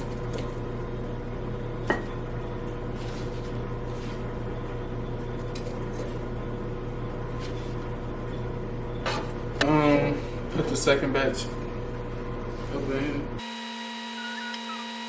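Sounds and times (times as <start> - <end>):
appliance electrical hum: 0.0 - 15.0.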